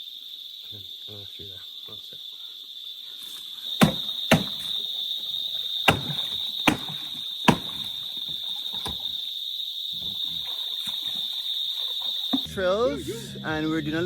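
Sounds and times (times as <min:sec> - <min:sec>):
crickets chirring: 0:00.0 - 0:14.0
sharp knocks: 0:03.8 - 0:04.8, 0:05.9 - 0:09.1.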